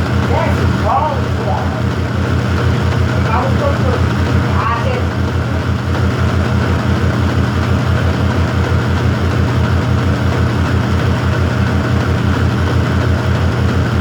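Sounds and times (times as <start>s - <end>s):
pulsing low machine hum: 0.0s - 14.0s.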